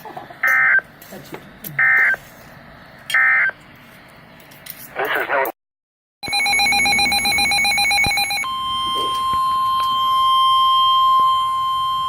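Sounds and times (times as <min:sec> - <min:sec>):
steady warning alarm tone: 0:01.8 - 0:02.2, 0:06.2 - 0:12.0.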